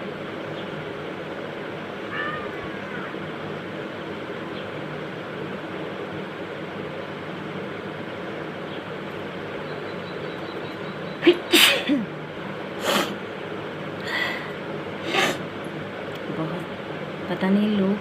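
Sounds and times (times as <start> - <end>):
steady background hiss: 0.0 - 18.0
woman sneezing: 11.2 - 12.1, 15.0 - 15.4
breathy bursts: 14.0 - 15.5.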